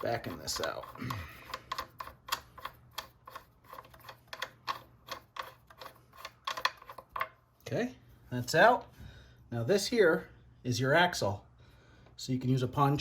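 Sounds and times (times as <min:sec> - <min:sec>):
ratchet wrench clicking: 0:00.0 - 0:07.3.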